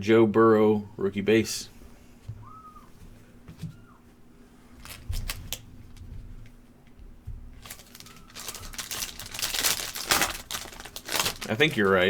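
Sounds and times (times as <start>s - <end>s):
cards being handled: 7.6s - 12.0s.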